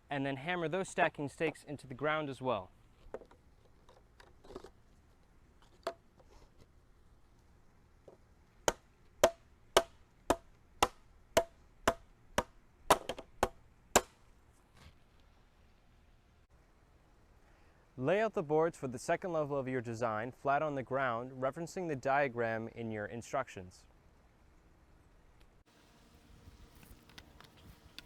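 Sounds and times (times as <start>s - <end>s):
hammer striking a stake: 8.6s - 14.2s.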